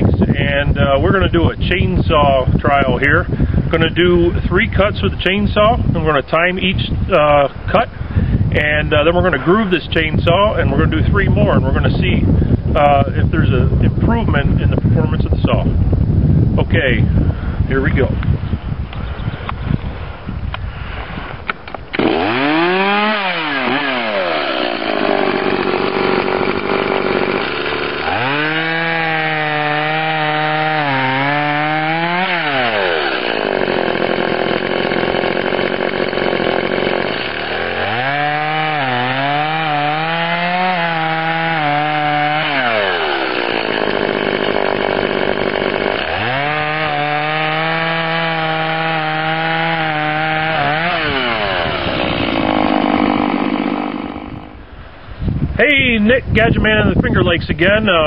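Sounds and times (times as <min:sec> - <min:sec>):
chainsaw cutting through log: 0:20.9 - 0:54.8.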